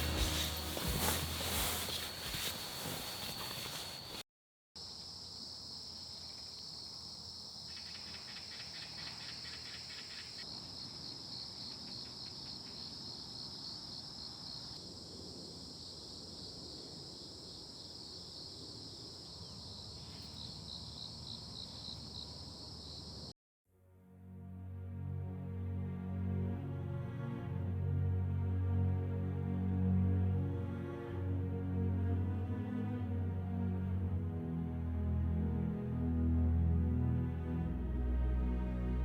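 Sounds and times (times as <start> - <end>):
crickets chirping: 0.1 - 4.2, 4.8 - 23.3.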